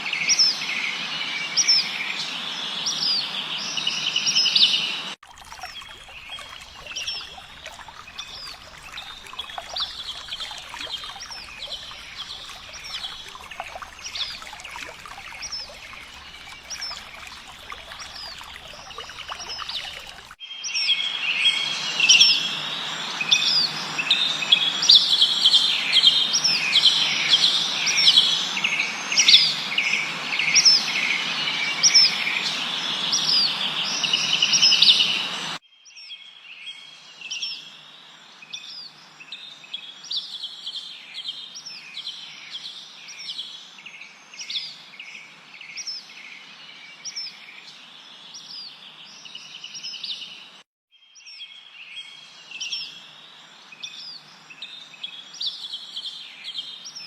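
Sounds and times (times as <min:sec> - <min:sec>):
songbirds chirping and trilling: 0:00.0 - 0:22.0.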